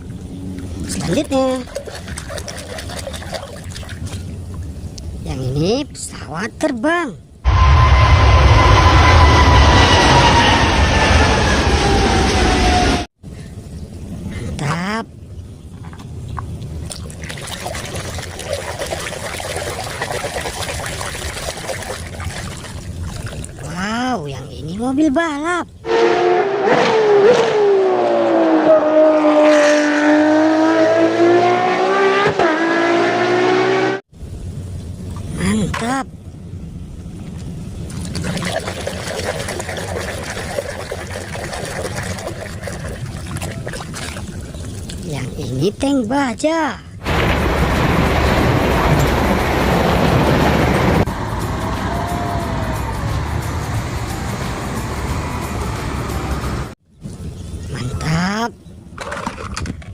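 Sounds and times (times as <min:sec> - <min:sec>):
water pouring and splashing: 0:00.0 - 0:05.2, 0:15.8 - 0:24.0, 0:37.2 - 0:45.4, 0:47.0 - 0:51.1.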